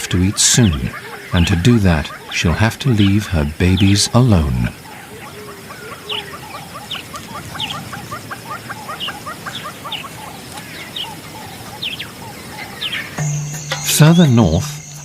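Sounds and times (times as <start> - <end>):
bird chirps and calls: 0.0 - 15.0
high insect buzz: 12.8 - 15.0.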